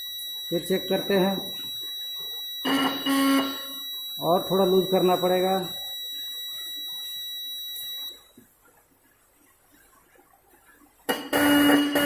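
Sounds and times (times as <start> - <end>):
high steady horn whine: 2.6 - 3.8, 11.3 - 12.0
loud buzzing horn honk: 2.7 - 3.6, 11.3 - 12.0.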